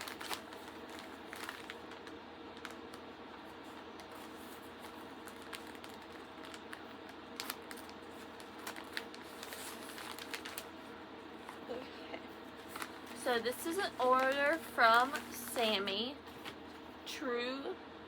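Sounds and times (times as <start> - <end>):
package rustling and clicking: 0.0 - 2.8, 3.7 - 10.7, 12.6 - 13.2
low background hum: 0.0 - 18.0.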